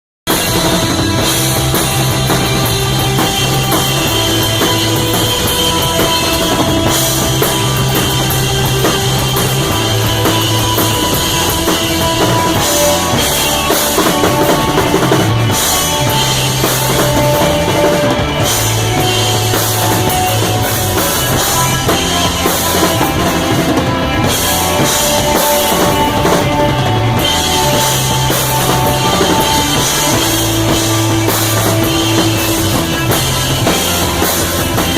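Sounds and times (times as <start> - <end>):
drum kit beat with cymbals: 0.2 - 34.9
bass line: 0.3 - 34.9.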